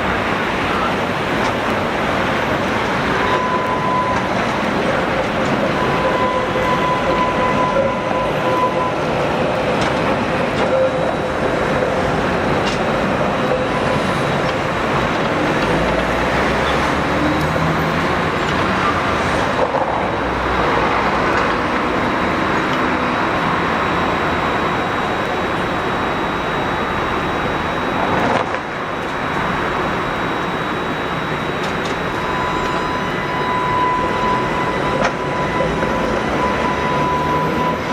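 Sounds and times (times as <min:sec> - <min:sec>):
held whine: 0:00.0 - 0:37.9
tram rumbling on track: 0:00.0 - 0:37.9.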